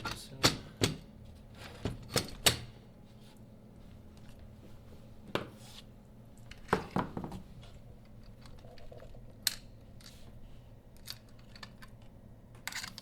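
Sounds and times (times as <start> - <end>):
small plastic parts clicking: 11.0 - 13.0.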